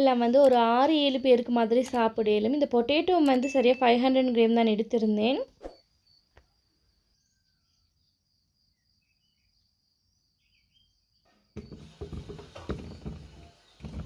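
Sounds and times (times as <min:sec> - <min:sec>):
faint cricket trill: 0:05.7 - 0:11.4
cookware knocking and clattering: 0:11.6 - 0:14.0.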